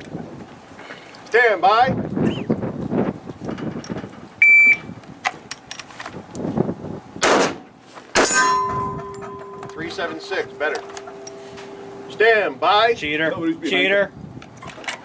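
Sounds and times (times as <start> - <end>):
pistol shot: 7.2 - 7.6
steel target ringing: 8.2 - 13.7.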